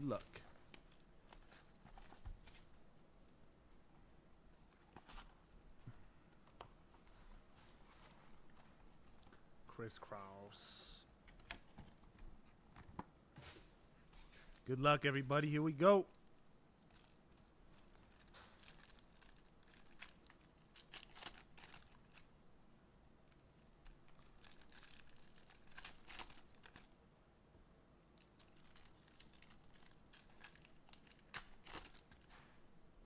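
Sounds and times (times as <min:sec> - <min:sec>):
wrappers crinkling and tearing: 0:16.1 - 0:22.3, 0:23.3 - 0:27.0, 0:28.2 - 0:32.4.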